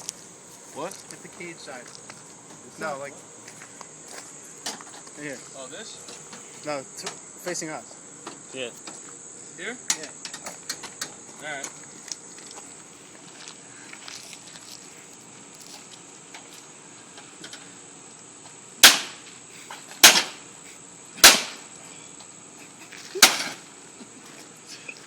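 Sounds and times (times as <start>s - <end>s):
metal pipe striking metal cage: 18.8s - 19.2s, 20.0s - 20.4s, 21.2s - 21.7s.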